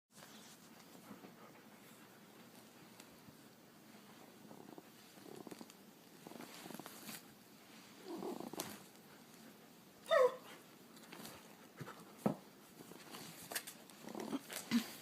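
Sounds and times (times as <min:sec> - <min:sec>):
soft rustles: 0:00.1 - 0:09.8, 0:10.4 - 0:15.0
dog whining: 0:10.0 - 0:10.6.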